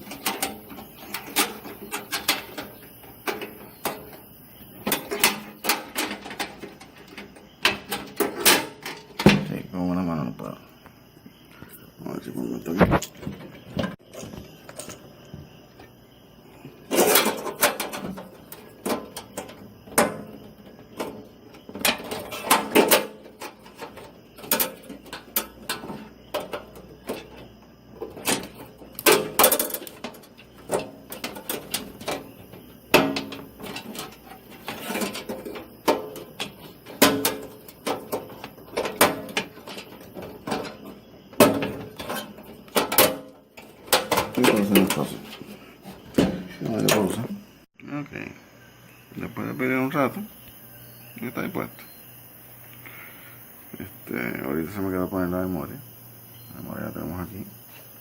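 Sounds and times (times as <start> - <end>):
metal shield clicking and scraping: 0.0 - 9.7, 16.8 - 47.4.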